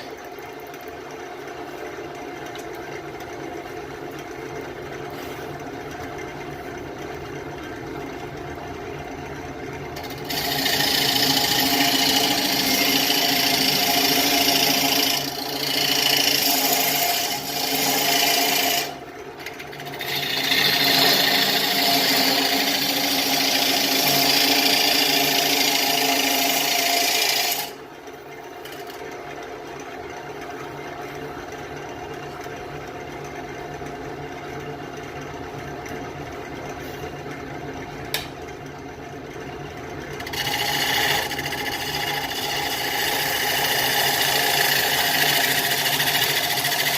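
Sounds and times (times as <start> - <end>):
wood lathe motor hum: 0.0 - 34.0, 40.0 - 46.9
turning tool scraping wood: 10.0 - 27.8, 40.2 - 46.9.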